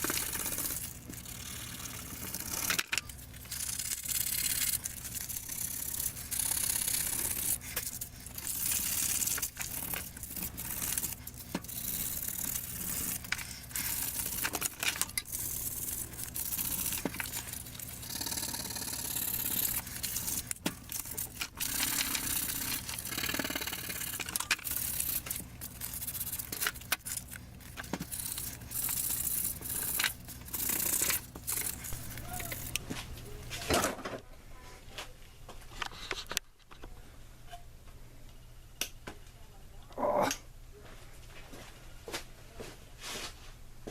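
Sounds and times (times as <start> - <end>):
wood scraping and sanding: 0.0 - 33.7
steady low hum: 0.0 - 43.9.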